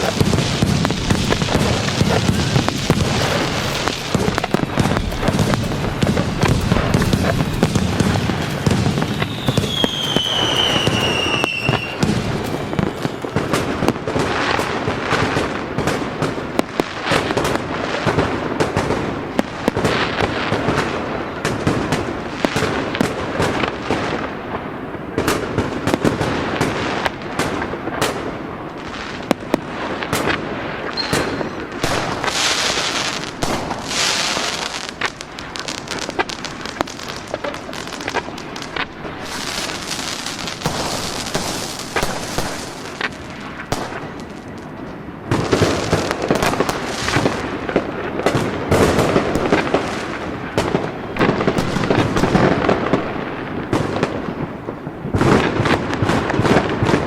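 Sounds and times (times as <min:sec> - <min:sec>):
falling firework whistle: 0:00.0 - 0:15.4, 0:30.2 - 0:53.1
fireworks bangs and crackling: 0:00.0 - 0:57.0.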